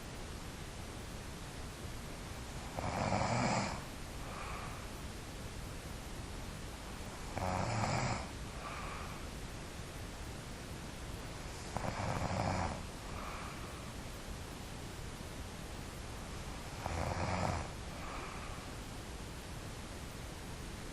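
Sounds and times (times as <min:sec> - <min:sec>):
steady background hiss: 0:00.0 - 0:20.9
person snoring: 0:02.6 - 0:04.7, 0:07.3 - 0:09.0, 0:11.6 - 0:13.6, 0:16.7 - 0:18.6.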